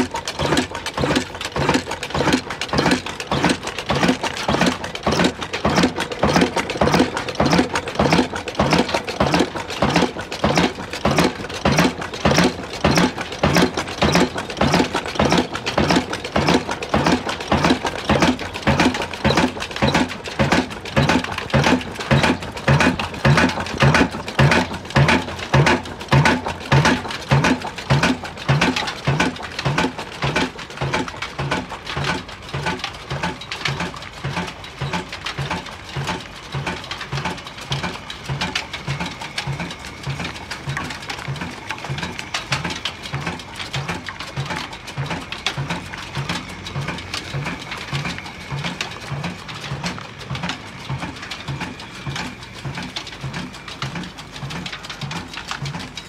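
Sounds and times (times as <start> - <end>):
diesel engine exhaust thumping: 0.0 - 56.0.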